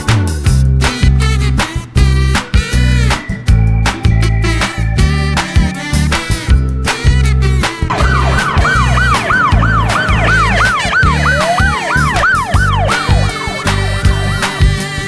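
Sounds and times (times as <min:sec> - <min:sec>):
background music with steady beat: 0:00.0 - 0:15.0
siren yelping: 0:07.9 - 0:14.8.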